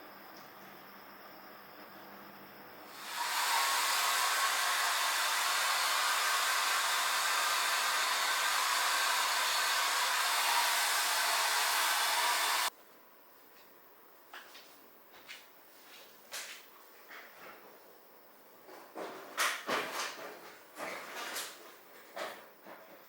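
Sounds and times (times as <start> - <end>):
hair dryer blowing: 2.9 - 12.7.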